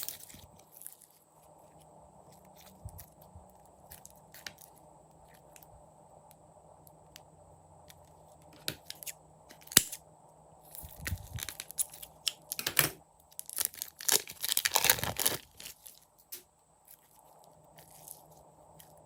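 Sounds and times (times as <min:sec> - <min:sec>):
slime crackling and popping: 0:11.0 - 0:12.7, 0:13.3 - 0:16.0.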